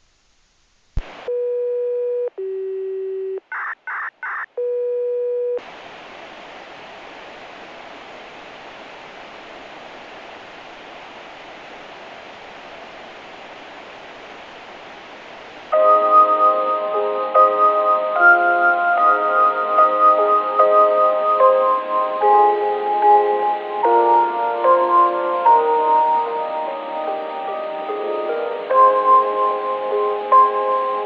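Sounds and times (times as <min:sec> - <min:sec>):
radio hiss: 0:00.0 - 0:01.4, 0:03.5 - 0:04.5, 0:05.6 - 0:15.8
radio signalling beeps: 0:03.5 - 0:04.9.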